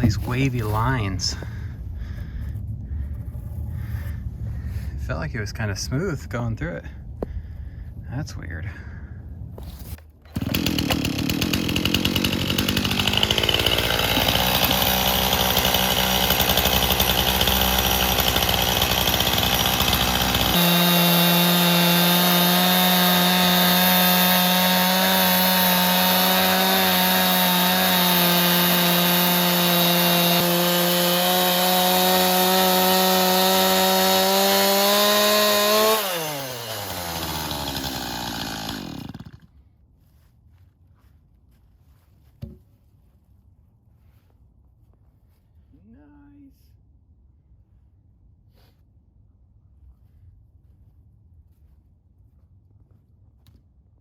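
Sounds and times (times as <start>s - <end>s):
chainsaw ripping a log: 0.0s - 1.5s, 9.8s - 39.5s.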